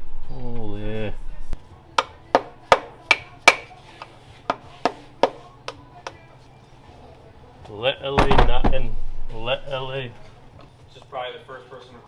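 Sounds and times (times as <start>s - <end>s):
hammer striking metal: 2.0s - 3.8s.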